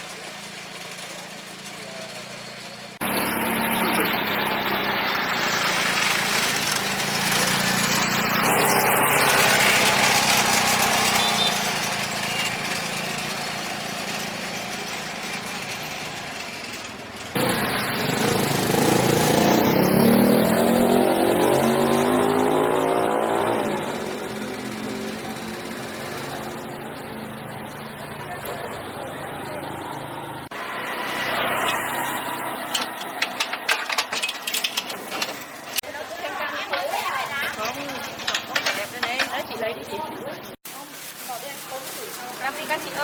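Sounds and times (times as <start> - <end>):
small engine revving: 3.0 - 33.9.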